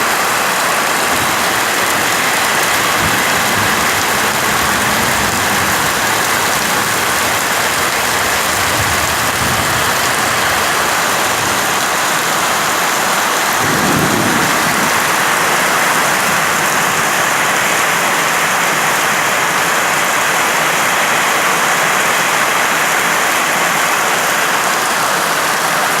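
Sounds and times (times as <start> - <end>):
heavy rain: 0.0 - 26.0.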